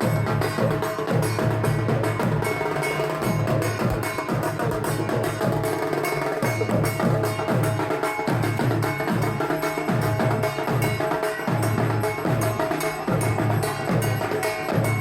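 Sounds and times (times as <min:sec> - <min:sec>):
drums played fast: 0:00.0 - 0:15.0.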